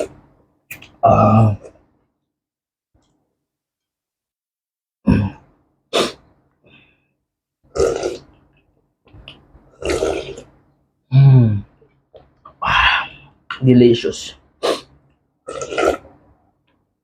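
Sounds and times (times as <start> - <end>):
low voiced throat sound: 0.8 - 1.9, 5.0 - 6.2, 7.7 - 8.3, 9.7 - 10.5, 14.6 - 16.2
person slurping soup: 7.7 - 8.3, 9.7 - 10.5, 14.6 - 16.1.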